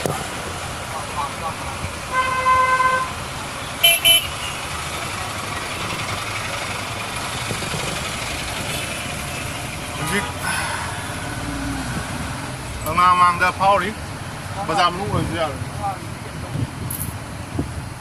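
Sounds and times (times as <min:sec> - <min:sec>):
road traffic noise: 0:00.0 - 0:18.0
vehicle horn honking: 0:02.1 - 0:03.2, 0:03.8 - 0:04.6.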